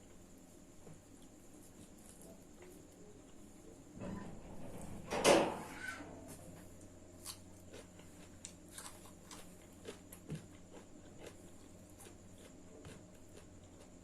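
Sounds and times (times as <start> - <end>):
chewing and biting smacks: 7.2 - 14.0.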